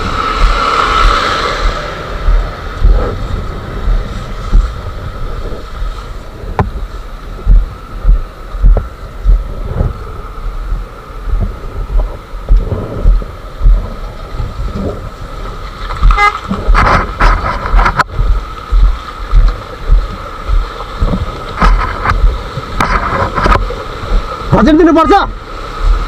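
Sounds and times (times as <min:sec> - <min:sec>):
motorcycle engine rumbling: 0:00.0 - 0:24.8
vehicle horn toot: 0:16.1 - 0:16.6.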